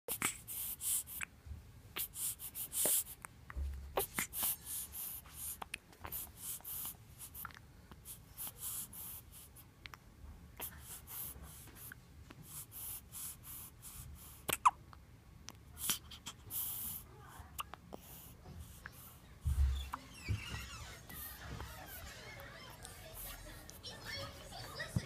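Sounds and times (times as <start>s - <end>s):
baby hiccuping: 14.4s - 14.8s, 17.5s - 17.8s.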